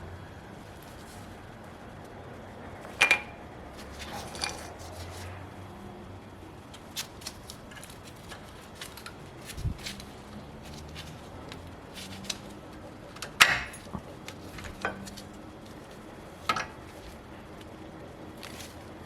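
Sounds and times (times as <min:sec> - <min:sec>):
metal brake parts clinking: 0:12.0 - 0:15.3.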